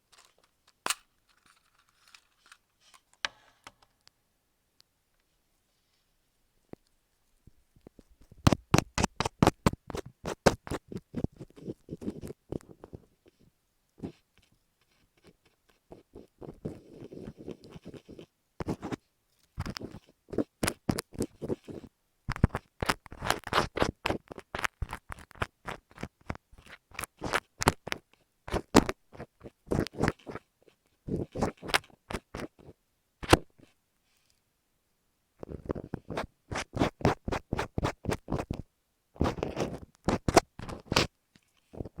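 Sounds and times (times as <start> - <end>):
scratching on a microphone: 7.9 - 19.0, 19.6 - 33.8, 35.4 - 42.0.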